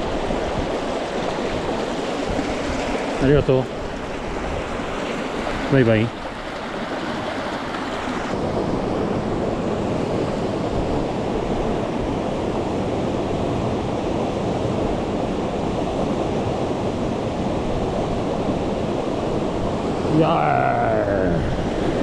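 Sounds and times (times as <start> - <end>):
mountain stream rushing: 0.0 - 22.0.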